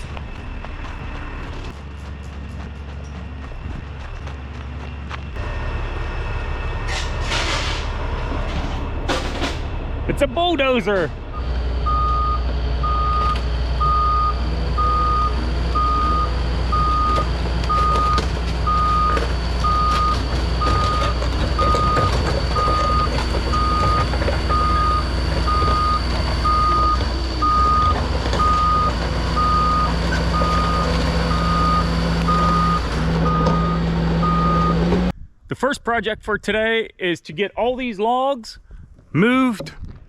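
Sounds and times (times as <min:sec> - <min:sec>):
diesel engine running: 0:00.0 - 0:35.2
backup alarm beeping: 0:11.3 - 0:34.9.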